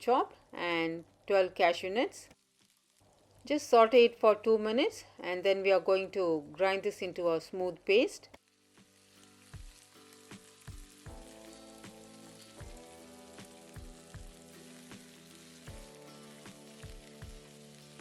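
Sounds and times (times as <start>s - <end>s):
food sizzling in oil: 0.0s - 5.0s, 8.4s - 18.0s
soft background music: 8.4s - 18.0s.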